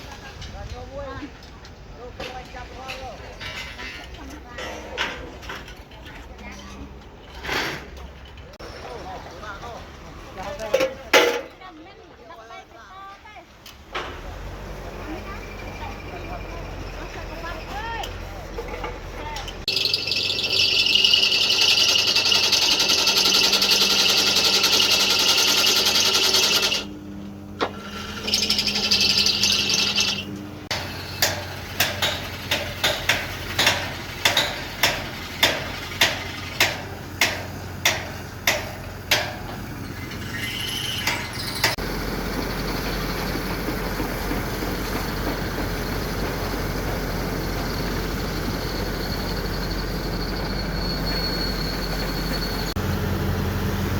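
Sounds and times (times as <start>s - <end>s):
motorised tool hissing and humming: 19.7s - 27.0s
low engine rumble: 41.2s - 53.9s.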